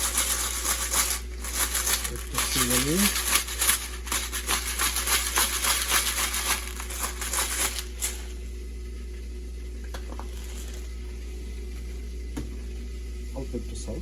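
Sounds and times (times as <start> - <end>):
kitchen utensils clicking and scraping: 0.0 - 8.3.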